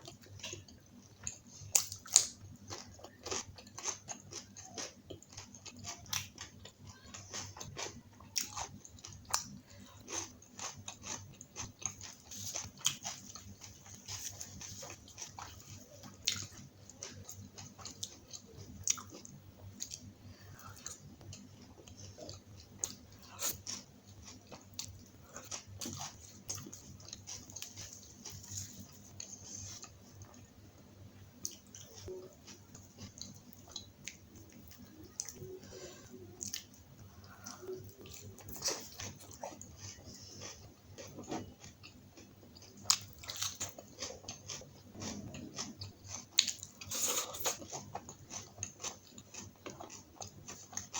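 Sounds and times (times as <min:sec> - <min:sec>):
person chewing with mouth clicks: 0:31.4 - 0:50.9.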